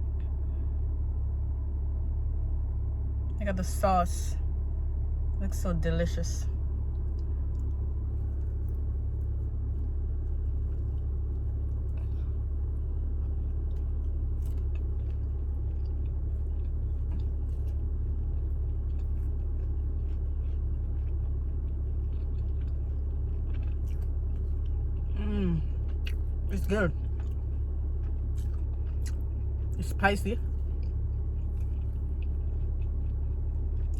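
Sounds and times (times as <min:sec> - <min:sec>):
low rumble: 0:00.0 - 0:33.9
person chewing food: 0:06.8 - 0:33.9.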